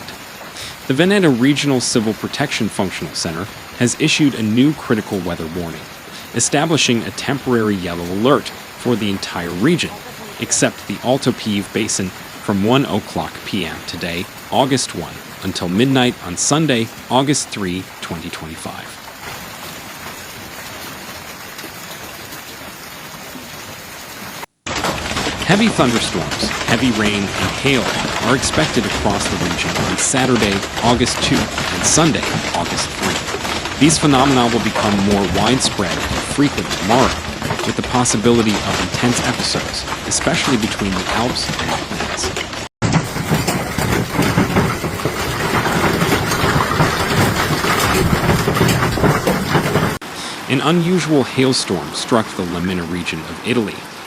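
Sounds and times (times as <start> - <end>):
heavy rain hissing: 0.0 - 54.0.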